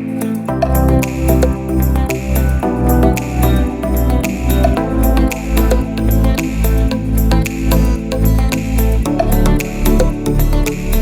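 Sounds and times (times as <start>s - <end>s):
mellow instrumental guitar music: 0.0s - 11.0s.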